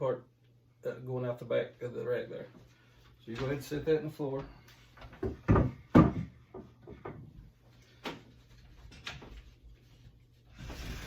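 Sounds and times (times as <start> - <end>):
wooden knocks on floor: 5.1 - 7.4.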